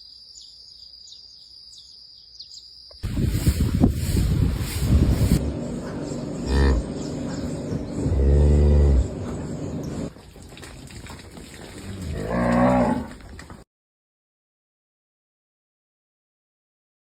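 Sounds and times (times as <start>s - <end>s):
cattle mooing: 6.4s - 9.5s, 11.8s - 13.2s.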